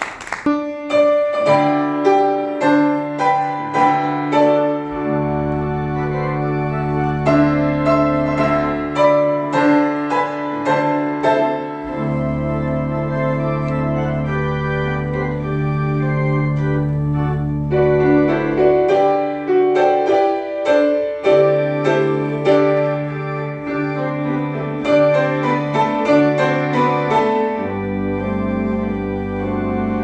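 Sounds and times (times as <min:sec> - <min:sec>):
piano notes: 0:00.0 - 0:30.0
organ chords: 0:00.4 - 0:30.0
deep bass notes: 0:11.7 - 0:19.7.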